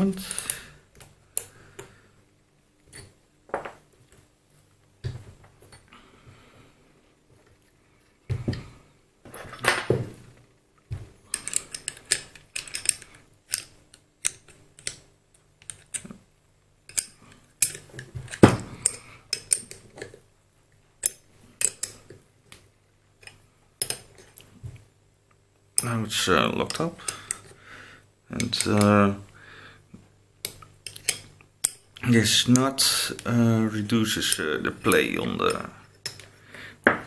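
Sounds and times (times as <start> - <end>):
metal tools clinking and tapping: 9.4 - 10.4, 11.3 - 13.7, 16.9 - 20.2, 34.2 - 36.3.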